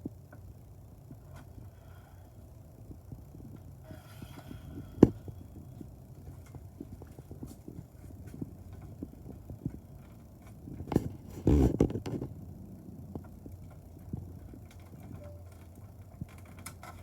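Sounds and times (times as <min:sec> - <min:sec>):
small clicks and knocks: 0:06.2 - 0:12.4, 0:13.1 - 0:17.0.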